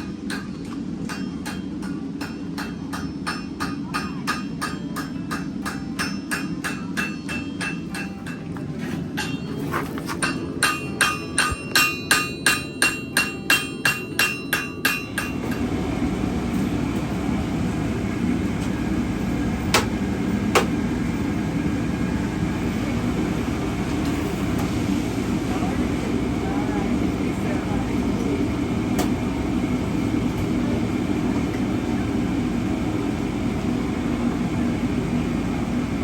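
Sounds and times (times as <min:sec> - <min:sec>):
hammer striking an anvil: 0:00.0 - 0:15.7, 0:19.7 - 0:20.8.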